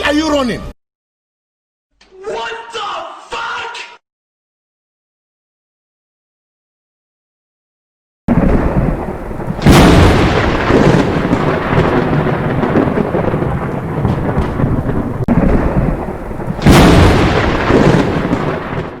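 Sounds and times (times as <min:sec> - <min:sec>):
loud thunder clap: 0:08.3 - 0:19.0
thunder rumbling: 0:08.3 - 0:19.0.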